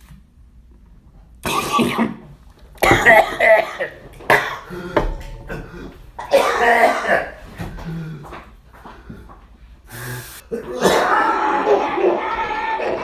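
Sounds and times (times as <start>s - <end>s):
man coughing and clearing throat: 1.4s - 2.2s, 2.8s - 8.0s, 10.5s - 11.2s.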